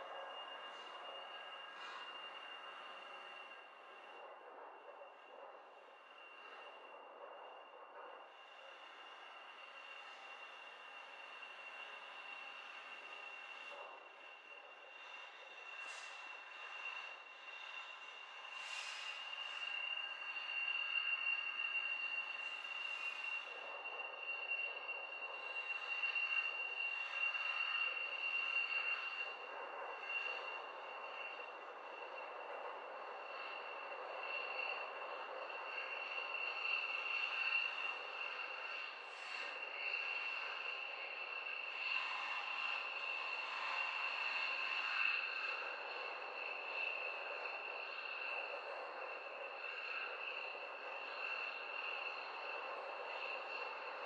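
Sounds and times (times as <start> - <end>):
distant jet engine whine: 0.0 - 54.0
hiss: 14.6 - 54.0
distant jet engine rush: 18.5 - 22.2.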